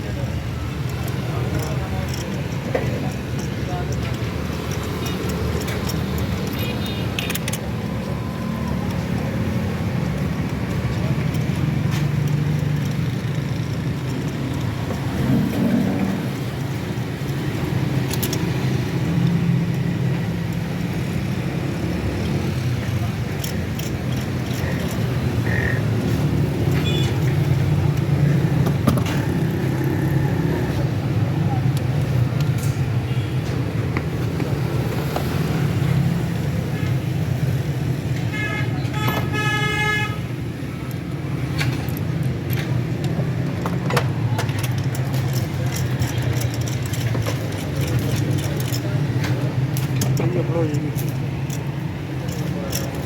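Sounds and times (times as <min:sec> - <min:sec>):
metallic clinks of tools: 0:00.4 - 0:28.4, 0:40.8 - 0:53.0
light metallic clicks: 0:16.3 - 0:30.0.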